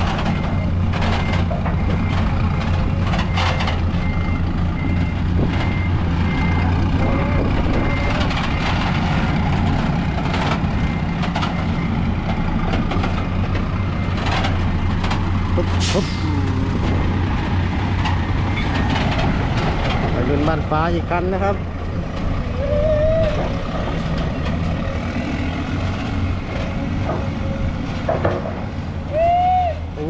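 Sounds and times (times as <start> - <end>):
reversing alarm beeping: 0.0 - 9.0
diesel truck engine running: 0.0 - 30.0.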